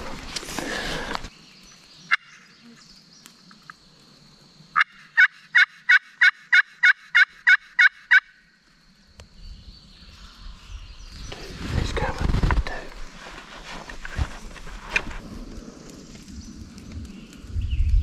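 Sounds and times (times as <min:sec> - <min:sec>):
turkey yelps: 0:04.8 - 0:08.3
rustling: 0:11.3 - 0:16.3.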